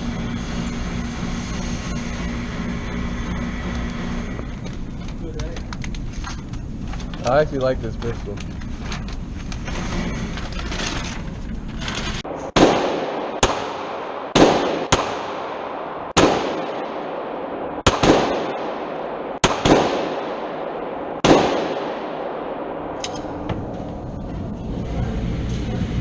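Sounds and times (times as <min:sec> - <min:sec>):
pistol shots echoing: 0:12.5 - 0:23.4.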